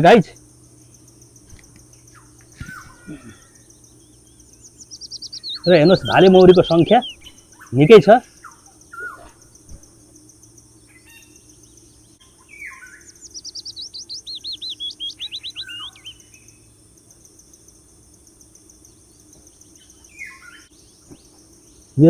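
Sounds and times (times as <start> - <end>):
faint high drone: 0.0 - 22.0
short bird chirps: 1.5 - 7.8, 8.4 - 9.9, 12.4 - 16.5
songbird singing high notes: 1.7 - 9.4, 12.4 - 16.5.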